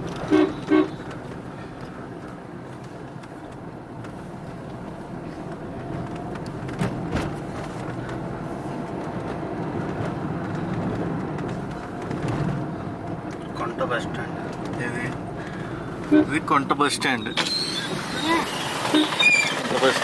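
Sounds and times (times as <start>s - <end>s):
car engine and road noise: 0.0s - 20.0s.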